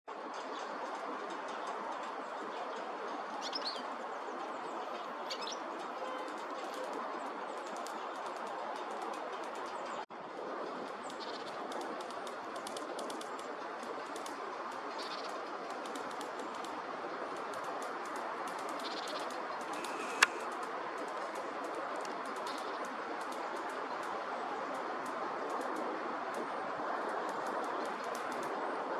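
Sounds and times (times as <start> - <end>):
woodpecker tapping on dry stalks: 17.4 - 24.1
sharp click: 19.6 - 20.5.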